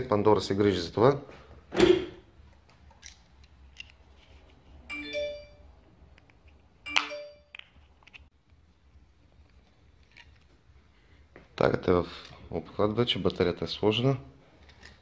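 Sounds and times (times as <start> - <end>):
short electronic chimes: 4.9 - 5.7, 6.9 - 7.5.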